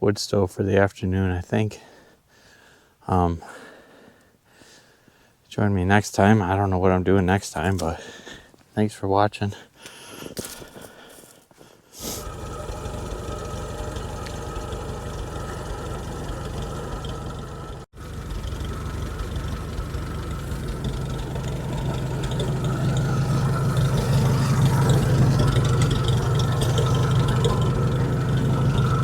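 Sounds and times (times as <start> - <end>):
engine running at low speed: 12.2 - 29.0.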